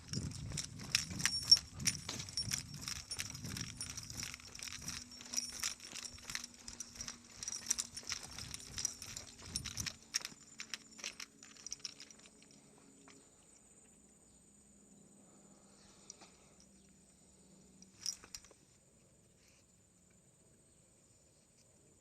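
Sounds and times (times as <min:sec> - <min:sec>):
quick footfalls: 0:00.0 - 0:10.4
light metallic jingling: 0:00.0 - 0:13.2, 0:15.9 - 0:18.6.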